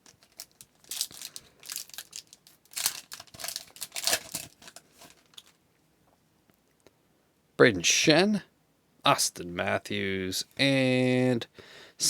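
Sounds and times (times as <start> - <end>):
card wrapper crinkling: 0.0 - 5.6.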